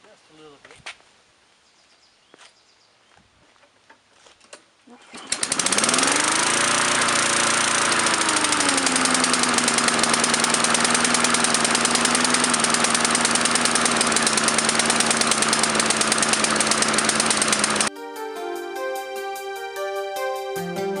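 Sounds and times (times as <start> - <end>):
lawn mower engine running: 5.0 - 17.9.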